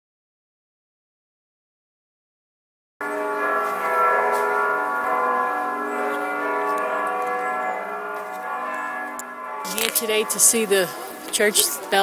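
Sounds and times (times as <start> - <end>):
church bells ringing: 3.0 - 12.0.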